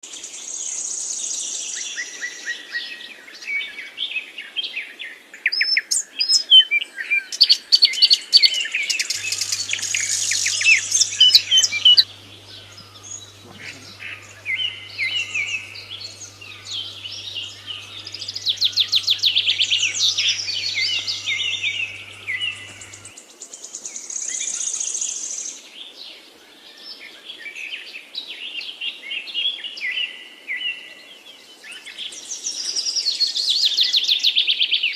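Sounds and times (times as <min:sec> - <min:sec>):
birds chirping and twittering: 0:07.3 - 0:27.6
faint low hum: 0:09.0 - 0:23.2.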